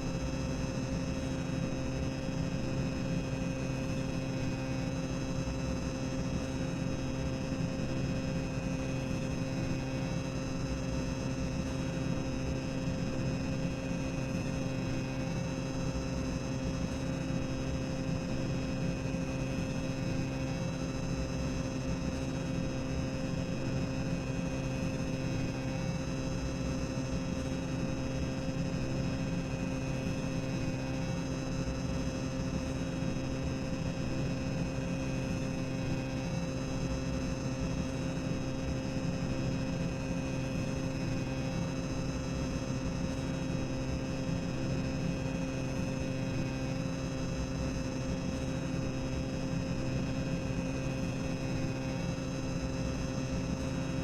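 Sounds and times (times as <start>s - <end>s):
boiler room machinery drone: 0.0s - 54.0s.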